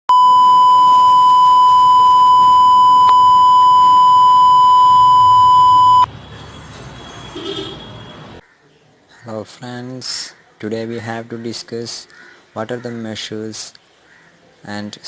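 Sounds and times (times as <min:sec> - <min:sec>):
high-pitched electronic beep tone: 0:00.1 - 0:06.1.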